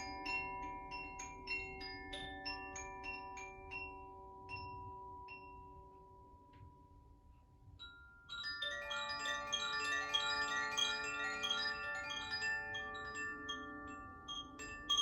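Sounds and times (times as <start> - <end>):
chimes ringing: 8.2 - 15.0.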